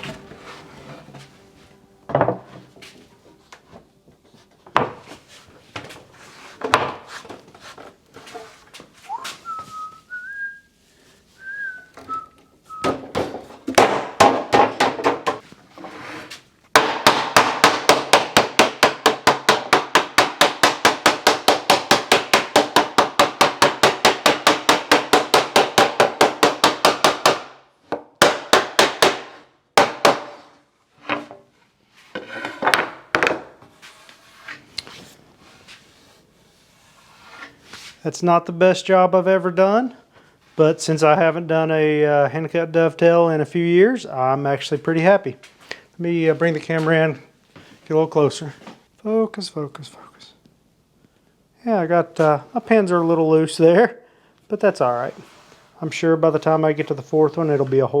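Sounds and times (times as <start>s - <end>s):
man whistling: 9.1s - 10.7s, 11.4s - 13.0s
tools knocking on wood: 12.8s - 15.4s, 16.8s - 30.4s.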